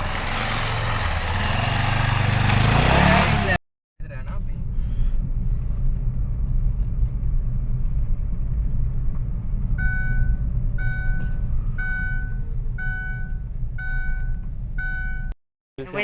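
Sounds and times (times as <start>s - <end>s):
vehicle engine rumble: 0.0s - 16.0s
electronic warning beep: 9.8s - 15.4s.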